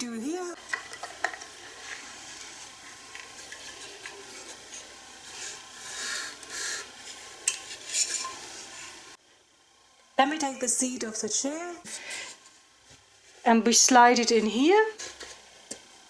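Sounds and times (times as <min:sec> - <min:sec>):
wooden chair parts scraping: 0:00.6 - 0:09.1, 0:15.0 - 0:15.4.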